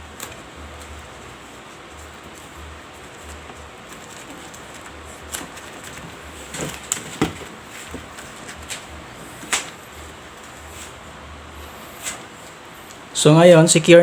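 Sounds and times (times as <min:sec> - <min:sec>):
tape snapping and rustling: 0:03.2 - 0:09.8.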